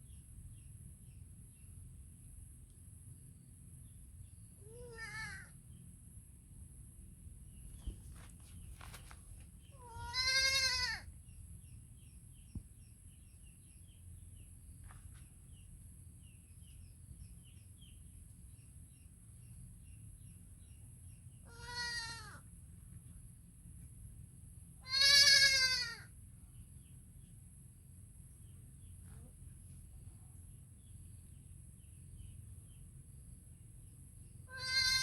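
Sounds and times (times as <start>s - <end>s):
goat kid bleating: 4.6s - 5.6s, 9.8s - 11.1s, 21.4s - 22.4s, 24.8s - 26.1s, 34.5s - 35.0s.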